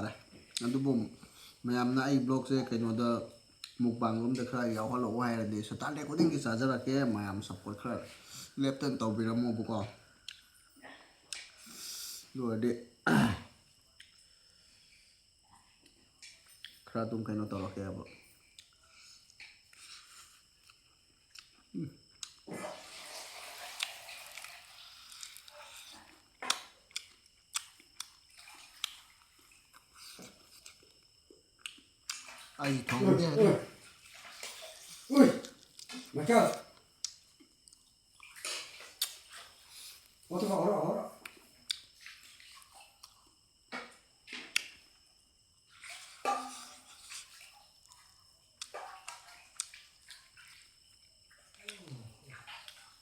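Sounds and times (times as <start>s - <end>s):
mouth clicks and smacks eating: 11.3s - 11.6s, 18.5s - 22.4s, 26.4s - 28.2s, 31.6s - 32.3s, 35.4s - 40.1s, 41.2s - 43.2s, 51.5s - 52.9s
person chewing: 18.6s - 22.5s, 24.9s - 28.2s, 28.8s - 31.0s, 31.6s - 32.3s, 34.9s - 40.3s, 41.2s - 41.9s, 51.6s - 52.0s.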